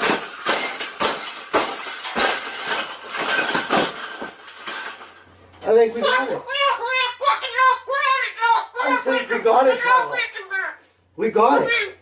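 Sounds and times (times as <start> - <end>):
wire cage clanking and rattling: 0.0 - 5.3.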